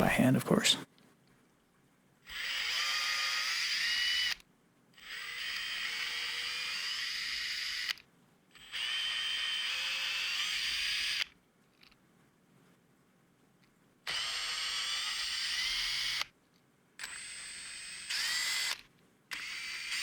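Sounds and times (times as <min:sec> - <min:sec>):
electric screwdriver whine: 0:02.3 - 0:04.4, 0:05.0 - 0:08.0, 0:08.6 - 0:11.3, 0:14.1 - 0:16.3, 0:17.0 - 0:20.0.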